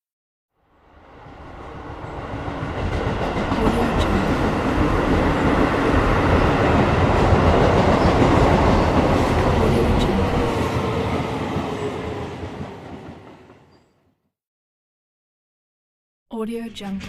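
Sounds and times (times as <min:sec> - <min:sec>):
train running on rails: 0:00.8 - 0:14.0.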